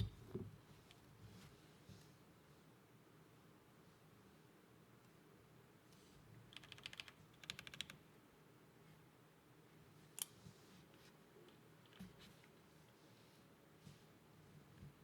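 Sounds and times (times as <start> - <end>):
mechanical keyboard keystrokes: 6.5 - 8.0.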